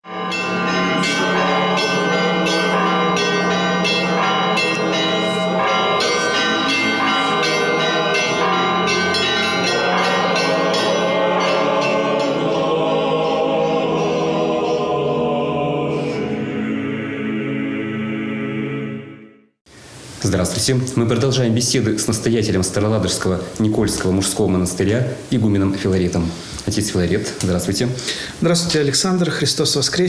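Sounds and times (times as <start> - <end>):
church bells ringing: 0.0 - 14.8
choral music: 0.0 - 19.6.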